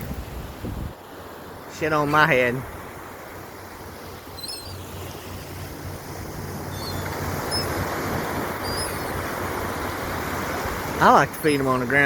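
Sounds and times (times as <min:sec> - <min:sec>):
surf: 0:00.0 - 0:12.0
wind: 0:00.0 - 0:12.0
seagulls calling: 0:04.0 - 0:09.9.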